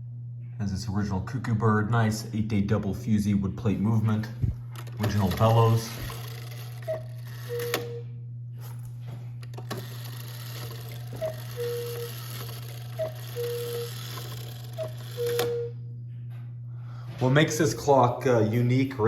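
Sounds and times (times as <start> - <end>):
steady low hum: 0.0 - 19.0
cuckoo clock calling: 5.0 - 8.0, 9.7 - 15.7
clock clicks: 9.7 - 15.6.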